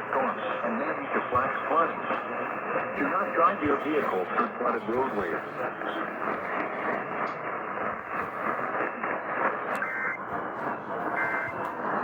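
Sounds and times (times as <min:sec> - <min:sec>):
radio hiss: 0:00.0 - 0:12.0
two-tone digital squawks: 0:09.8 - 0:10.2, 0:11.2 - 0:11.6.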